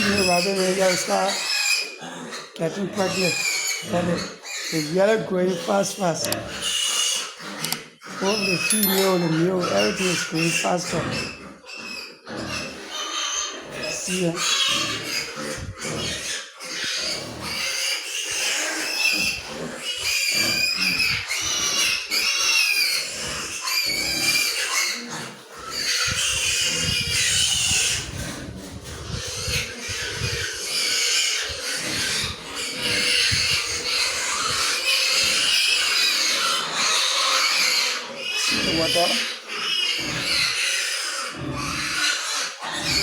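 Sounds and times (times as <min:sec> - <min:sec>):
pigs squealing: 0:00.0 - 0:43.0.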